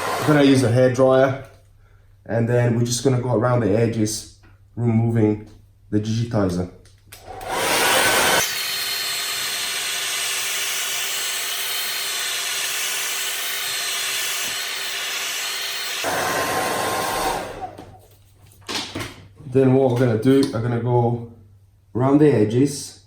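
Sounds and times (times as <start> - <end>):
hairdryer running: 0.0 - 0.6, 7.2 - 18.1.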